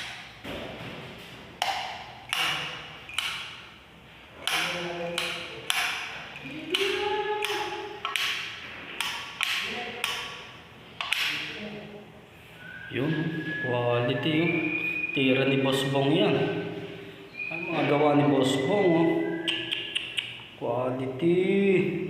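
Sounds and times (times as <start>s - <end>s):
footsteps in echoing room: 0.0s - 11.6s.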